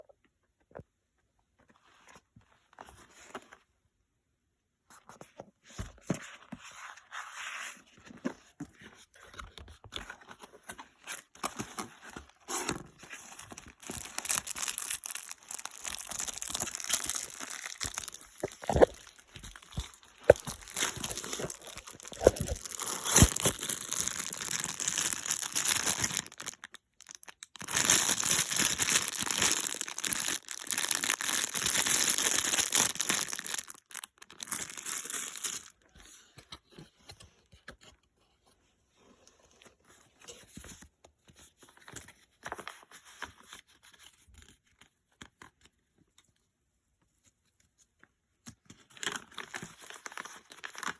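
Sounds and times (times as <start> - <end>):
packaging crinkling and tearing: 11.3 - 35.8, 49.0 - 50.9.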